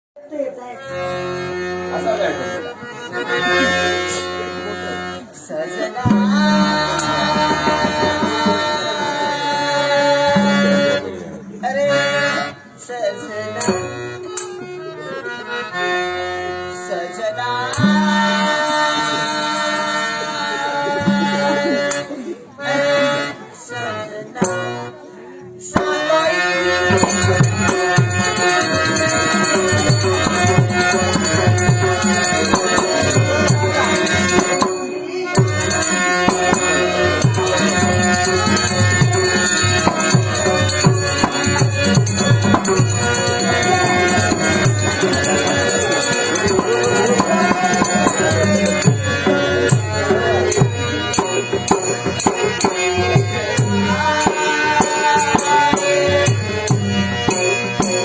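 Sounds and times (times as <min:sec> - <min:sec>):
held melody: 0:00.8 - 0:58.0
jingling percussion: 0:06.1 - 0:11.6, 0:13.2 - 0:16.0, 0:17.7 - 0:22.2, 0:26.7 - 0:58.0
hand drum beating: 0:26.9 - 0:34.8, 0:35.4 - 0:55.7.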